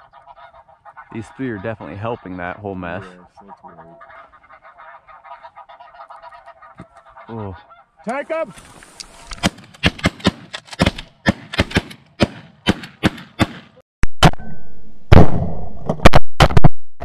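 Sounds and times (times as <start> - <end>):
shotgun fire volley: 9.4 - 14.4, 15.1 - 16.7.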